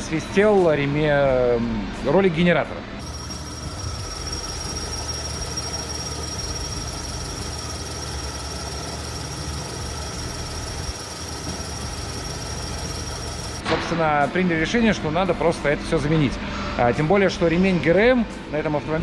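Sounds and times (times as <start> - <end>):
car engine running: 3.0 - 13.6.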